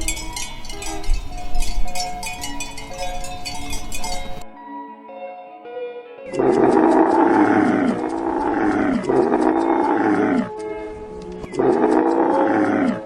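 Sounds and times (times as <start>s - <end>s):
soft guitar music: 0.0s - 13.0s
large animal calling: 6.3s - 13.0s.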